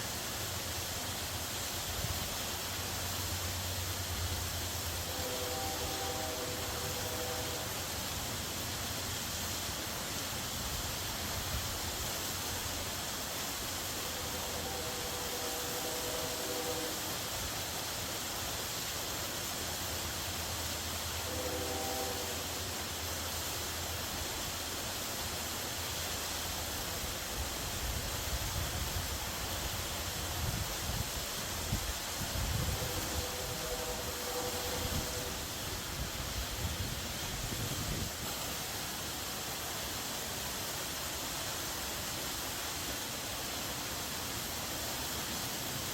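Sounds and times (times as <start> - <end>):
waterfall rushing: 0.0 - 45.9
distant horn blasts: 5.0 - 8.0, 14.0 - 17.2, 21.2 - 22.6, 32.5 - 35.6.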